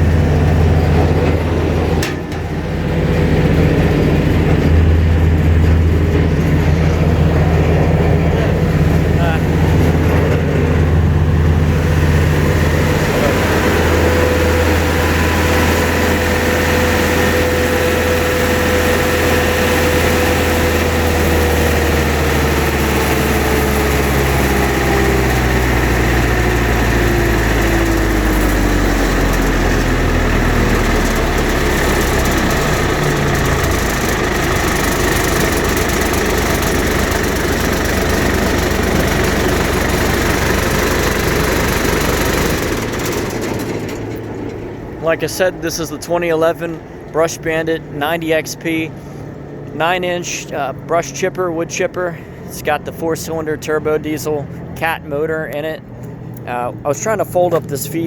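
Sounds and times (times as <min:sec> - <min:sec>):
diesel engine running with whine: 0:00.0 - 0:58.0.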